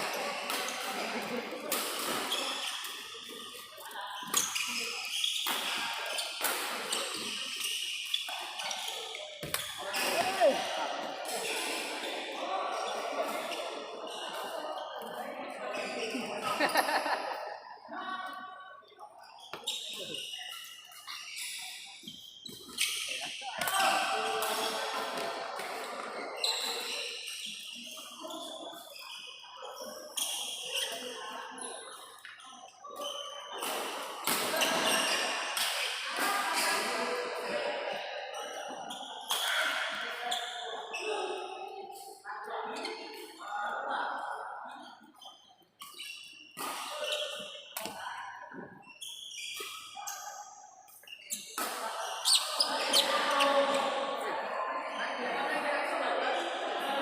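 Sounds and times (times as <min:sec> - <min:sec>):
shoes squeaking on floor: 0:02.1 - 0:10.7, 0:18.8 - 0:23.8, 0:26.2 - 0:33.6, 0:44.9 - 0:54.0
rackets hitting shuttlecock: 0:08.2 - 0:11.7
rackets striking shuttlecock: 0:09.4 - 0:10.4.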